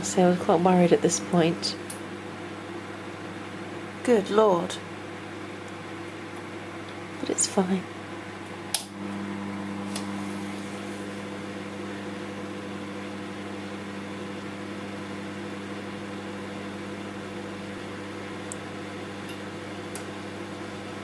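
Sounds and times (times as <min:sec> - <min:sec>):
fan noise: 0:00.0 - 0:21.0
microwave oven humming: 0:00.0 - 0:21.0.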